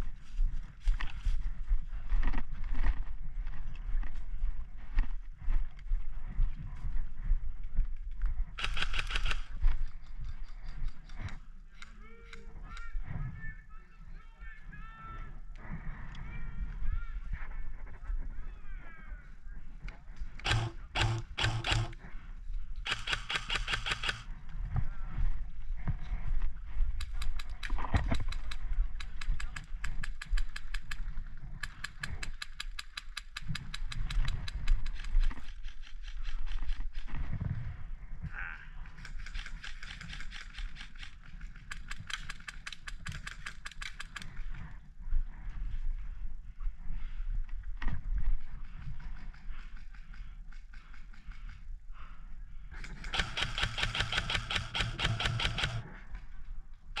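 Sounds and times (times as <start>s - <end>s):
airsoft guns firing rapidly: 8.6s - 9.5s, 20.4s - 22.0s, 22.9s - 24.2s, 52.8s - 55.9s.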